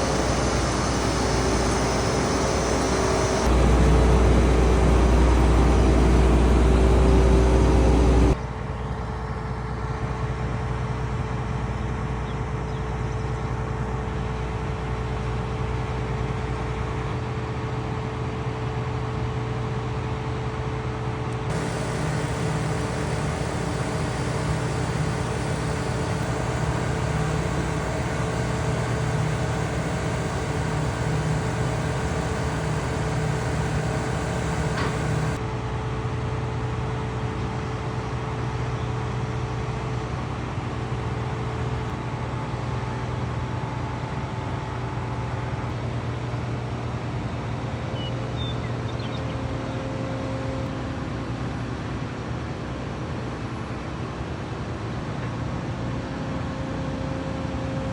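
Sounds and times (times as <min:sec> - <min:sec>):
diesel engine humming: 0:00.0 - 0:08.4, 0:21.5 - 0:35.4.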